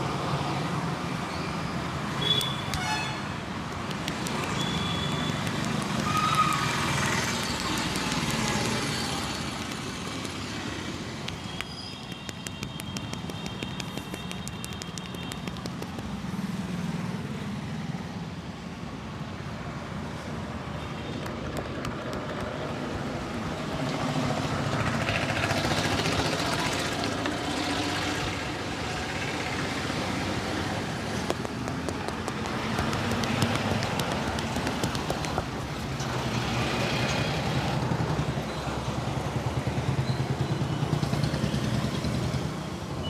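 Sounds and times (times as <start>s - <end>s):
street traffic passing: 0.0s - 43.0s
sharp clicks: 3.6s - 16.3s, 21.1s - 22.9s, 30.4s - 36.4s.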